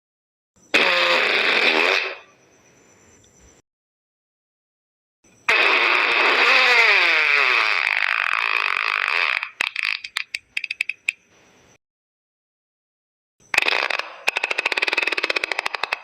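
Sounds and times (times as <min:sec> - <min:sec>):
long wavering fart: 0:00.8 - 0:02.2, 0:05.5 - 0:09.6.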